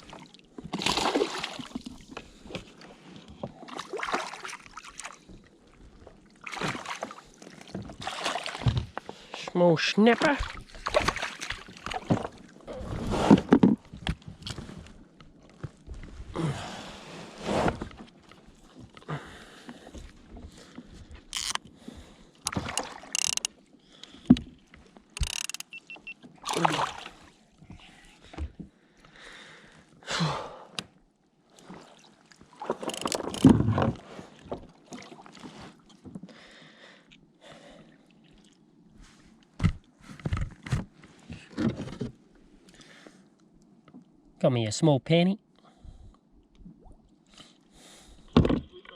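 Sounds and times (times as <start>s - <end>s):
water splashing: 0.0s - 2.0s, 3.6s - 5.3s, 6.4s - 9.2s, 9.8s - 12.6s, 22.5s - 23.3s, 25.2s - 27.3s
bumps and rustles on a kayak: 0.0s - 4.2s, 5.1s - 16.4s, 17.1s - 26.4s, 27.0s - 28.8s, 31.6s - 36.3s, 39.0s - 42.7s, 48.2s - 48.9s.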